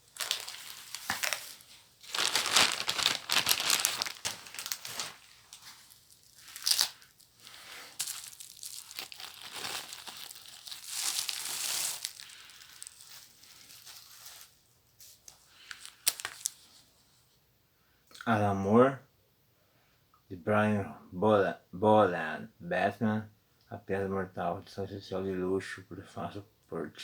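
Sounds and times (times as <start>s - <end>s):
packaging tearing and crumpling: 0.0s - 14.5s, 15.6s - 16.6s.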